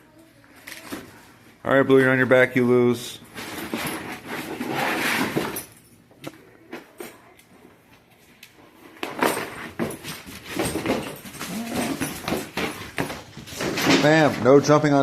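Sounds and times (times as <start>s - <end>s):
dogs scuffling: 9.0s - 14.7s.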